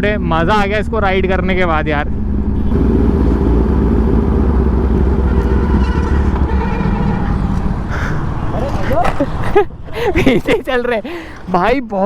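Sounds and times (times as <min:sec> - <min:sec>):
motorcycle engine droning: 0:02.2 - 0:08.6.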